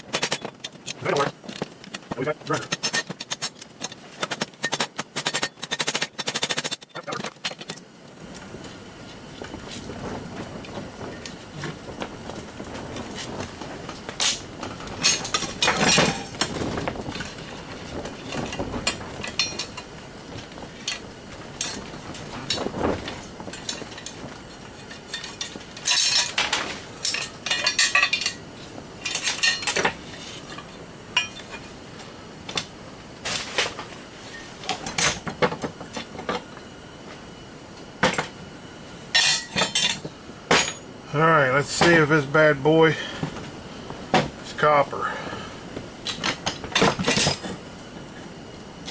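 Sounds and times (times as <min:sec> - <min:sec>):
metal parts clinking and scraping: 0:00.1 - 0:07.8, 0:15.0 - 0:17.6, 0:24.8 - 0:28.4, 0:29.0 - 0:31.7.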